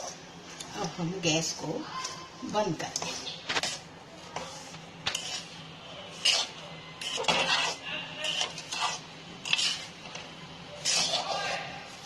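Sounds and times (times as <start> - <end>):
metal spoon scraping a pan: 3.0 - 12.0.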